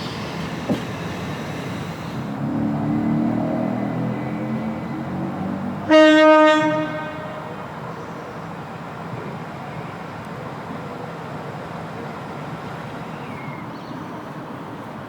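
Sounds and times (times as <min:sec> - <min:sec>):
train rumbling: 0:00.0 - 0:15.0
train horn blast: 0:05.8 - 0:07.7.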